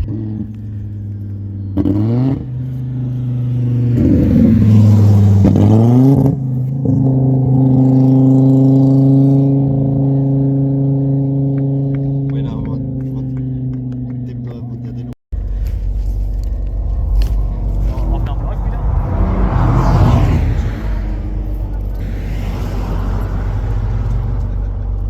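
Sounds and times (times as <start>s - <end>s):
car engine revving: 0.0s - 25.0s.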